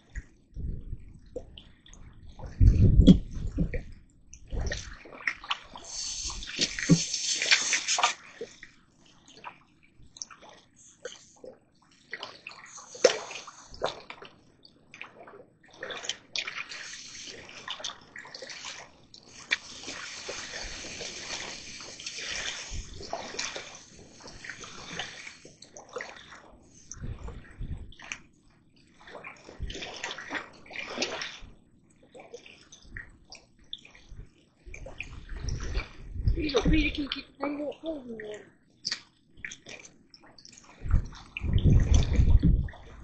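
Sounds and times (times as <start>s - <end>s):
water sloshing and splashing: 0.0s - 43.0s
hiss of moving water: 5.8s - 8.6s, 12.6s - 13.9s, 16.7s - 17.8s, 18.4s - 26.1s.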